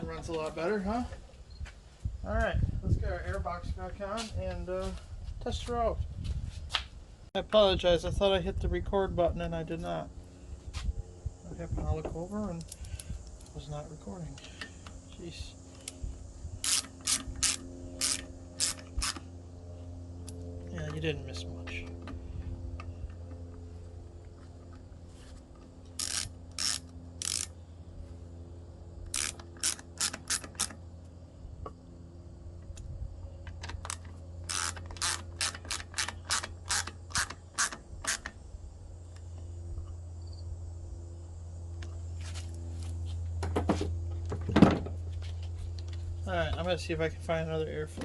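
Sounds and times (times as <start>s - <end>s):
low hum: 0.0s - 48.0s
ratchet wrench clicking: 16.6s - 19.2s, 25.9s - 27.6s, 29.0s - 30.8s, 33.7s - 38.4s.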